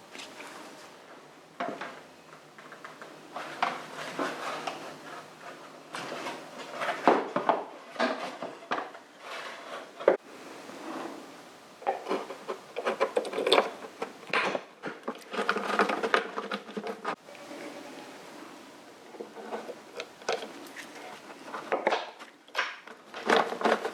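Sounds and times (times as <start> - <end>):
parts scraping: 1.6 - 23.9
tools clattering and knocking: 11.8 - 17.2, 19.2 - 23.9.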